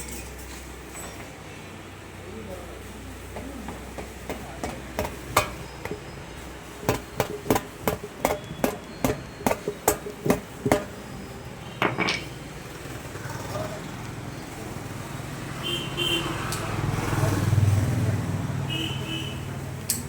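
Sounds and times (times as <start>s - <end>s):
hammer strikes: 3.3s - 6.2s, 6.8s - 11.0s.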